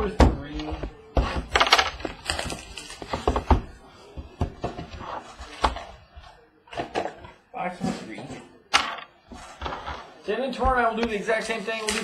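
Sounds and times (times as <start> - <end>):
wrapper and cardboard crinkling: 1.5 - 3.3.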